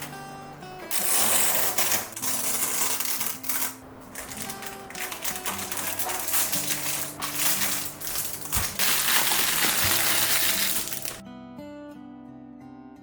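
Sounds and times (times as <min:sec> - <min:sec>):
plucked guitar music: 0:00.0 - 0:02.2.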